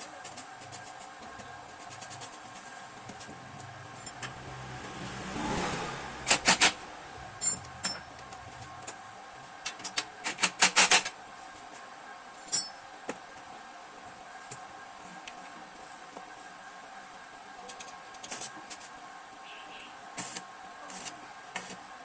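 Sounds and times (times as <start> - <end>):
metal tools clinking: 7.4 - 8.4, 12.4 - 12.9.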